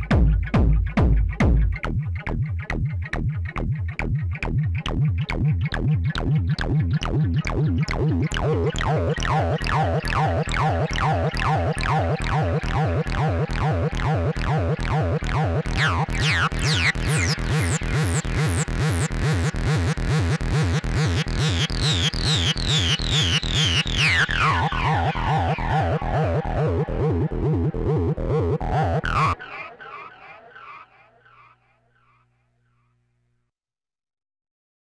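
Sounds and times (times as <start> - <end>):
driving kick drum beat: 0.0 - 2.0
falling synthesizer sweeps: 21.4 - 31.7.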